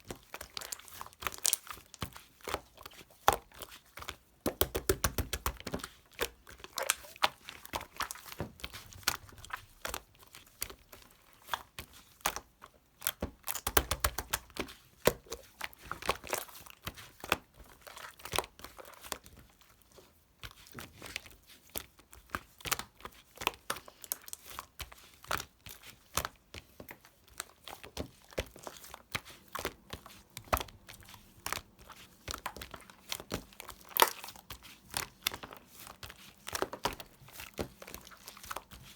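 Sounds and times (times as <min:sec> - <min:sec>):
slime squeezed by hand: 0:06.5 - 0:10.1.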